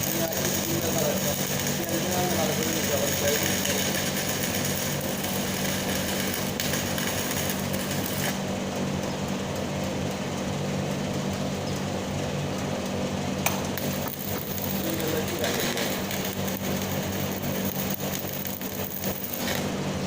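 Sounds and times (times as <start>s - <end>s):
welding arc crackling and hissing: 0.0s - 8.5s, 13.5s - 20.0s
low machine hum: 0.0s - 20.0s.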